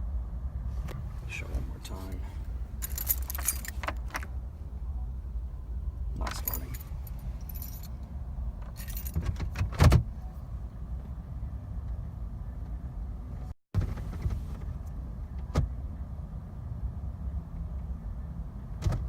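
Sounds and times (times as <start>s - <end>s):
steady low rumble: 0.0s - 13.5s
car keys jangling: 1.2s - 4.4s, 6.2s - 9.7s.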